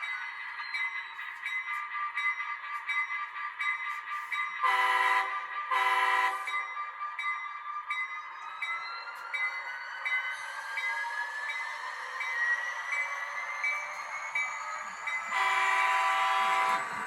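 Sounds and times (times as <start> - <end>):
train horn blasts: 4.6 - 6.6, 15.3 - 17.0.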